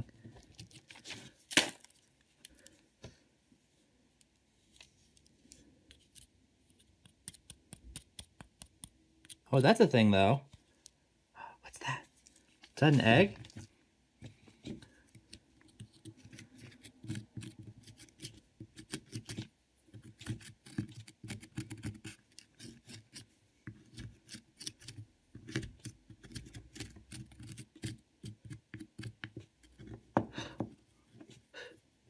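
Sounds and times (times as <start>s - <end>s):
tool scraping plaster: 15.7s - 30.0s.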